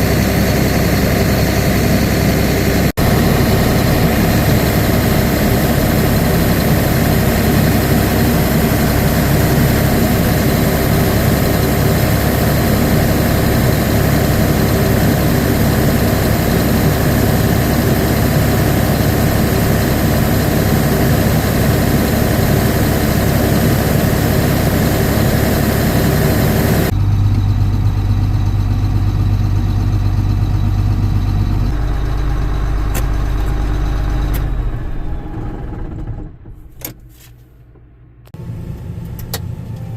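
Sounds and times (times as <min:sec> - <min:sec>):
farm machinery engine running: 0:00.0 - 0:37.3
deeper engine hum: 0:00.0 - 0:39.9.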